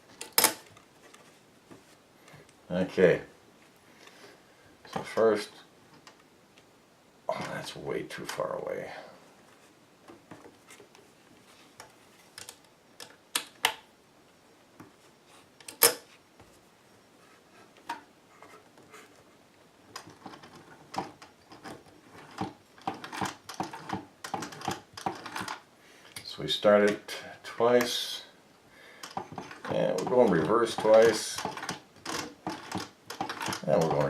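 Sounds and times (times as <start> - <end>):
sewing machine clicking: 20.0 - 25.6, 29.0 - 34.0.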